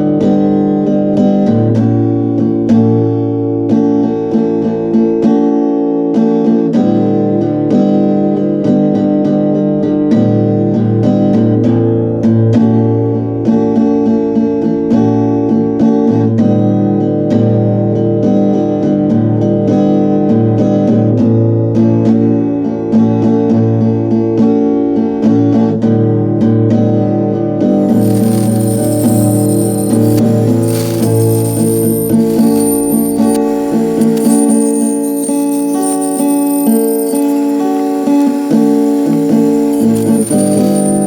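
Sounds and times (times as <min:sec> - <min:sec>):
acoustic guitar music: 0:27.4 - 0:41.0.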